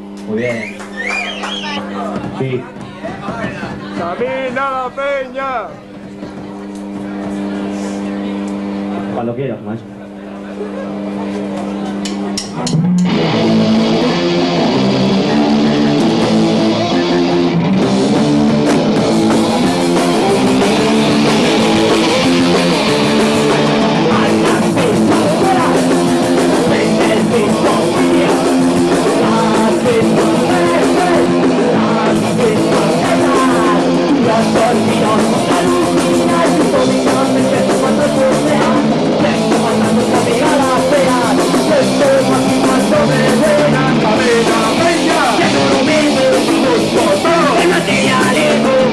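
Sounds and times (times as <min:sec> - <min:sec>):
electric guitar: 0:00.0 - 0:48.9
drum kit: 0:11.9 - 0:48.9.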